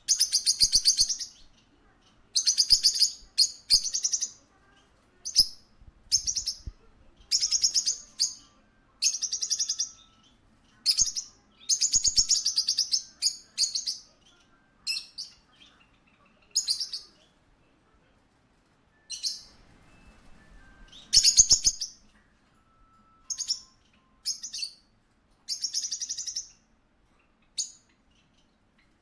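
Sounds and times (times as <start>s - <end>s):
parakeet chirping: 0.0s - 4.6s, 5.2s - 17.3s, 19.0s - 22.1s, 22.8s - 24.9s, 25.5s - 26.6s.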